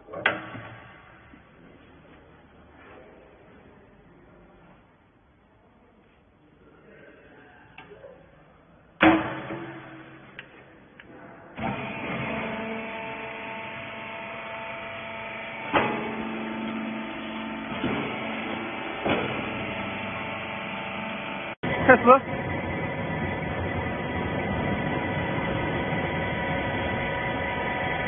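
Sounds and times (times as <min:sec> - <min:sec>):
hydraulic power unit humming: 0:09.0 - 0:28.0.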